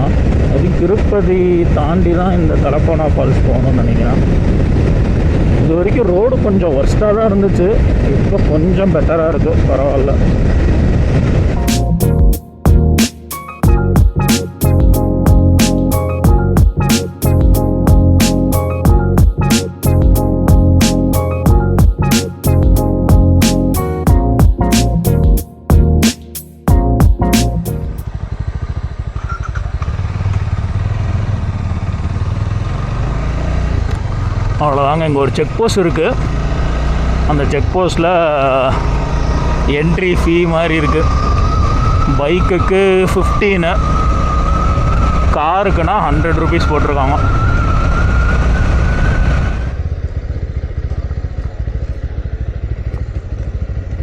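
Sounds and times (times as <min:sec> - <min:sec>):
wind noise on microphone: 0:03.4 - 0:11.6
music: 0:11.6 - 0:28.0
motorcycle engine running: 0:28.0 - 0:37.9, 0:48.6 - 0:54.0.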